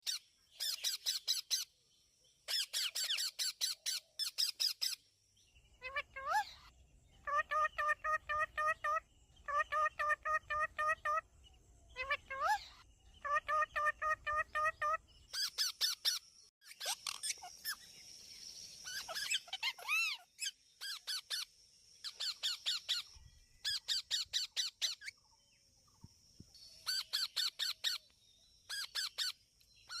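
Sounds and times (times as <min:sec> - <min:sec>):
parrots calling: 0:02.5 - 0:05.0, 0:05.8 - 0:11.3, 0:11.9 - 0:17.9, 0:18.8 - 0:25.1, 0:26.8 - 0:28.0, 0:28.7 - 0:30.0.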